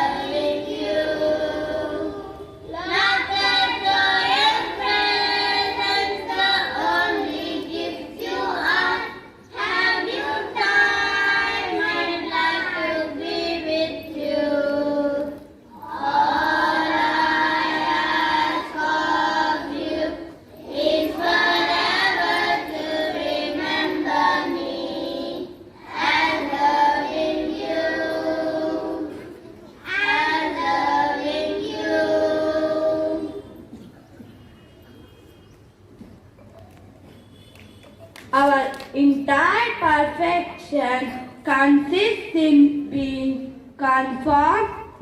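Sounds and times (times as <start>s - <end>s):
children singing in unison: 0.0s - 33.8s.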